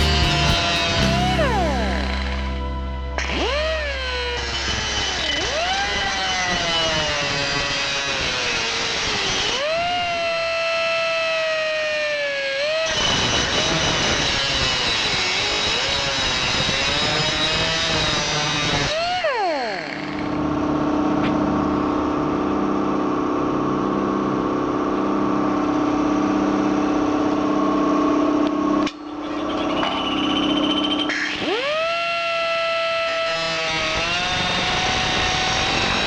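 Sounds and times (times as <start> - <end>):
pulsing machine hum: 0.0 - 7.5
pneumatic rotary tool whine: 3.6 - 20.6, 29.4 - 36.0.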